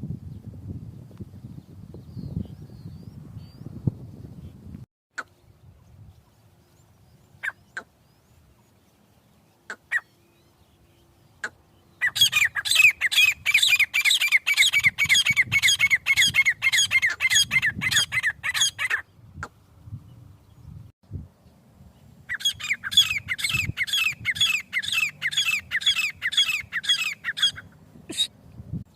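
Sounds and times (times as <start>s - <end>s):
francolin calling: 9.6s - 19.2s, 22.3s - 28.3s.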